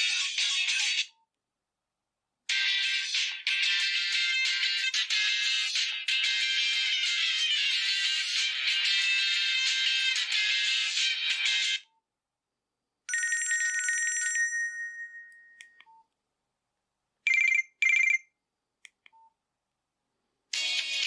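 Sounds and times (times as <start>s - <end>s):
telephone ring beeps: 17.3s - 18.3s.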